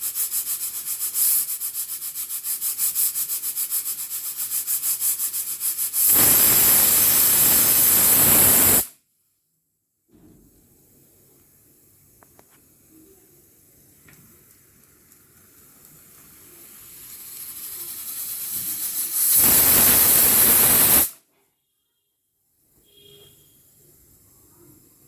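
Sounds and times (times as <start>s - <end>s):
steam hissing: 2.9s - 8.9s, 15.4s - 21.2s
pressure cooker whistling: 5.9s - 8.9s, 17.0s - 21.2s, 22.8s - 23.7s.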